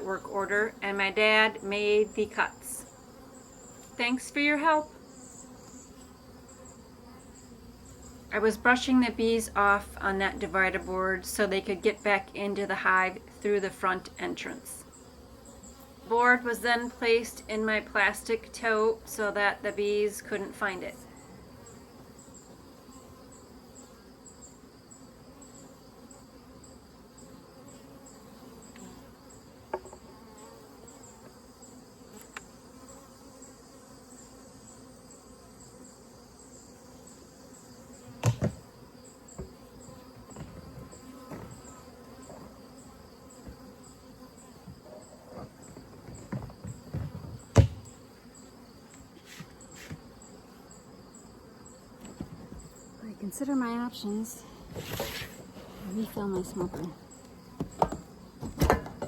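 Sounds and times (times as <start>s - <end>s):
insect chirping: 0.0s - 17.6s, 18.3s - 59.0s
honeybees buzzing: 0.0s - 59.0s
sharp knocks: 38.2s - 38.6s, 46.1s - 48.0s, 57.6s - 59.0s.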